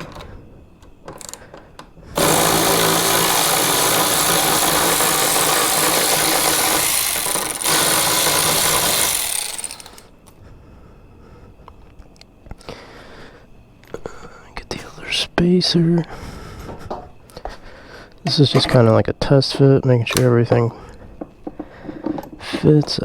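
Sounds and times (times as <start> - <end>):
power drill driving a bolt: 2.2 - 10.1.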